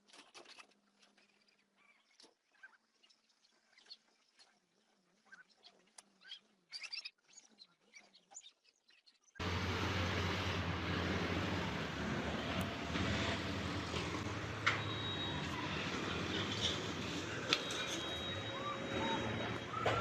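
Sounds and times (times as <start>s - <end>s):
vehicle engine rumbling: 9.4s - 20.0s.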